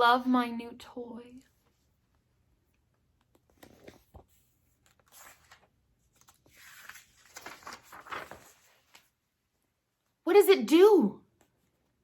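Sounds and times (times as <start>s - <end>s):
paper pages rustling: 3.2s - 9.2s.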